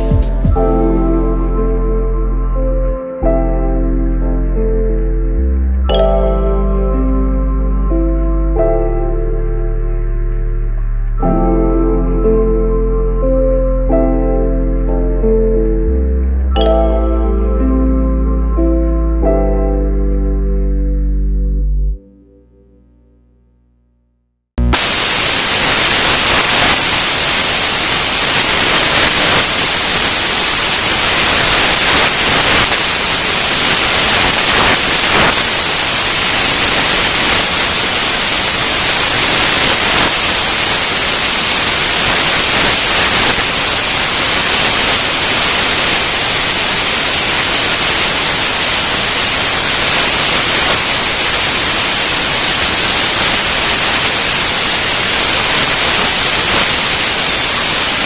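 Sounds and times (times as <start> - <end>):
steady hiss: 24.6 - 58.0.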